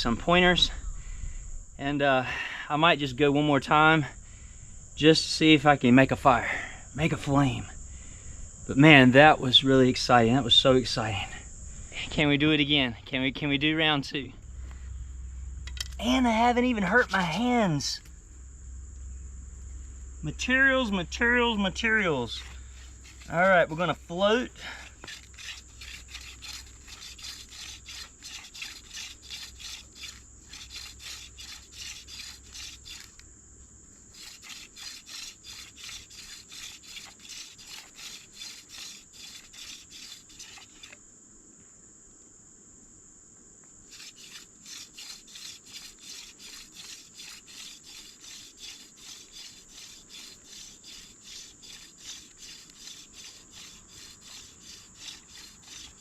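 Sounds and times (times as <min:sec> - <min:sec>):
high insect trill: 0:00.0 - 0:56.0
wood rubbing on wood: 0:20.8 - 0:33.2, 0:34.1 - 0:41.0, 0:43.9 - 0:56.0.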